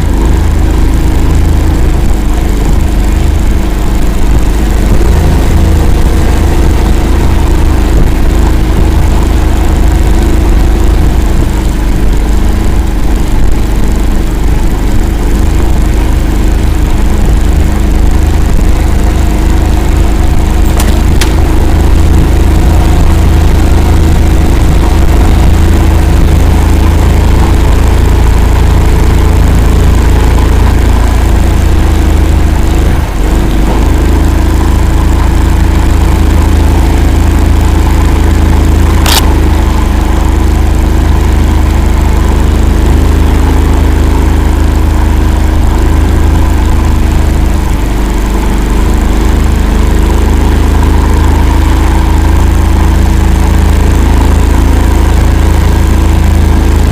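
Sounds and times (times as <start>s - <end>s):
loud vehicle engine running: 0.0s - 56.9s
sharp click: 20.7s - 21.4s, 39.0s - 39.4s.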